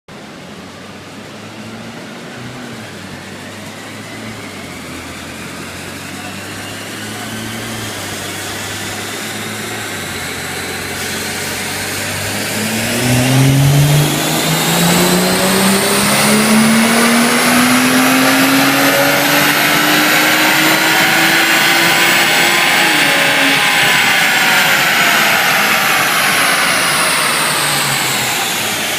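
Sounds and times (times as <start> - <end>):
car engine revving on dyno: 0.1 - 28.9
dyno rollers whining: 0.2 - 28.9.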